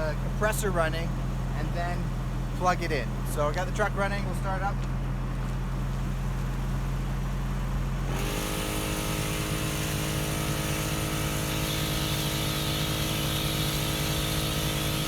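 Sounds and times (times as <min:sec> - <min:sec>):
air compressor running with hiss: 0:08.1 - 0:15.0.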